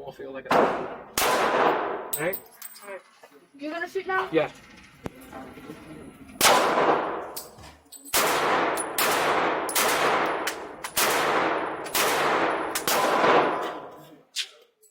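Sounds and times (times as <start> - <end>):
pistol gunshots echoing: 0.5 - 2.1, 6.4 - 7.4, 8.1 - 13.9.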